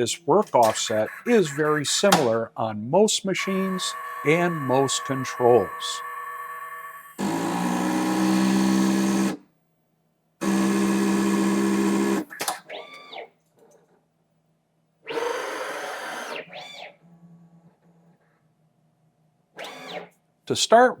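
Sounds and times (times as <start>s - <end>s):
motor whines rising and falling: 3.4s - 9.4s
tool changer mechanical runs: 3.4s - 9.4s.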